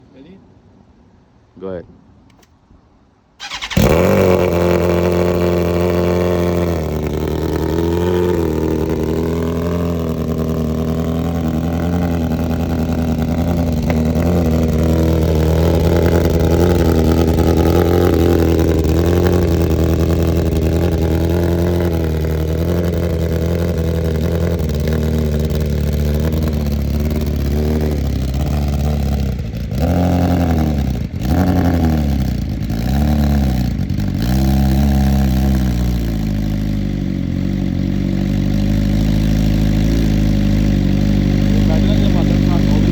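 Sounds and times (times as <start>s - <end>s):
motorcycle engine starting and idling: 3.4s - 42.9s.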